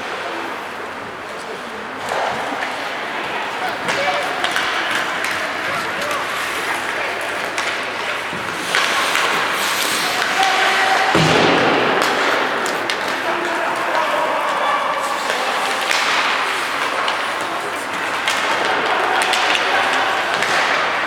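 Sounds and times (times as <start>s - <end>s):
hockey sticks and puck clacking: 0.0s - 21.0s
ice rink noise: 0.0s - 21.0s
heavy thud against rink boards: 7.4s - 13.4s, 15.1s - 21.0s.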